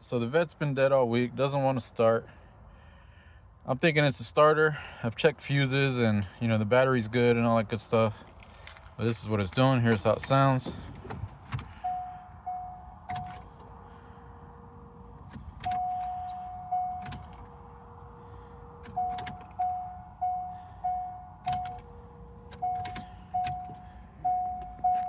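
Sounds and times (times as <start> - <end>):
car warning chimes: 8.7 - 25.0
low steady tone: 11.8 - 25.0.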